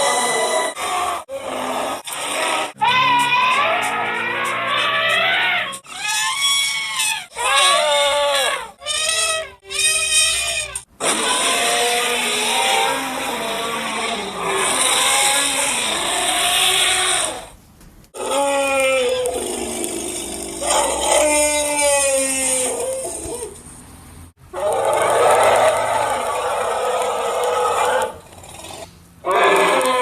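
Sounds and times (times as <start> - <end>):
long harsh cry: 0.0 - 17.5, 18.2 - 19.7, 20.6 - 23.6, 29.2 - 30.0
wavering bleat-like cries: 0.0 - 17.5, 20.6 - 23.5, 29.2 - 30.0.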